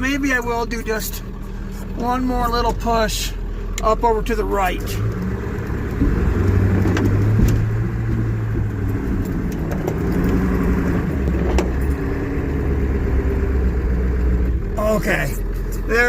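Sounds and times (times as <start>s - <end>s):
truck engine running under load: 0.0s - 16.0s
scattered knocks: 5.9s - 8.8s.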